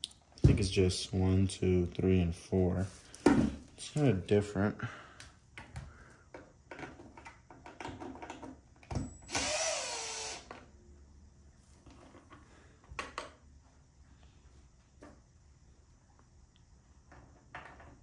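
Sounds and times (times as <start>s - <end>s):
power drill whirring: 9.0s - 10.6s.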